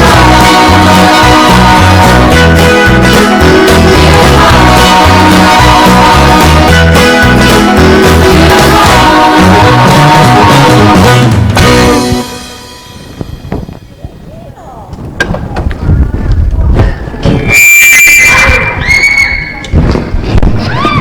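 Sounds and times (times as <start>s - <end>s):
upbeat music with guitar: 0.0s - 13.3s.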